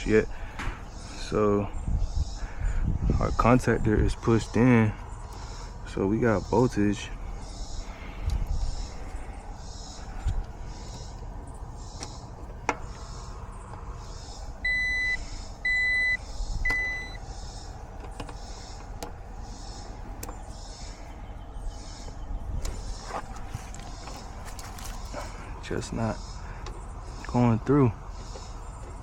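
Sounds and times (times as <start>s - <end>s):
insects chirping: 0.0s - 29.0s
electronic beeps: 14.6s - 17.2s.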